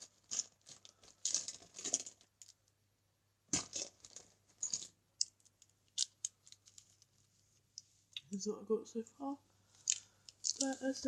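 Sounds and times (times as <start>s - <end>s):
plastic markers clattering: 3.6s - 7.1s, 9.8s - 11.0s.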